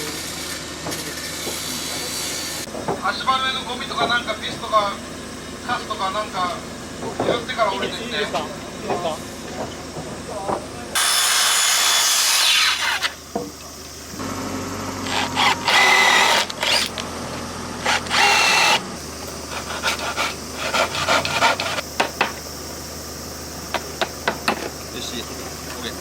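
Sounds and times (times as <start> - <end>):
power drill whining: 11.0 - 13.2, 14.2 - 21.8.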